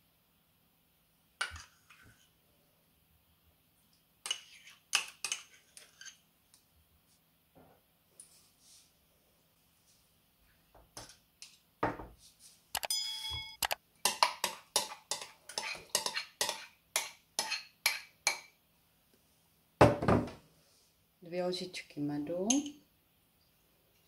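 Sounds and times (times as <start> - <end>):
spoon clinking against bowl: 22.5 - 22.8.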